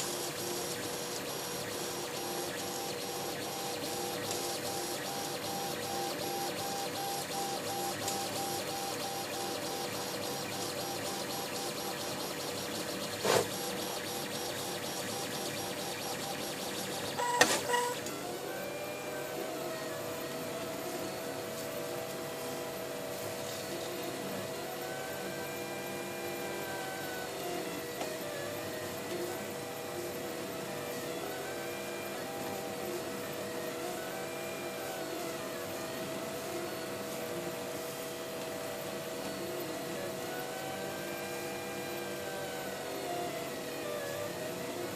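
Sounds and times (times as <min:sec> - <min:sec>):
printer stepper motors whining: 0:00.0 - 0:44.9.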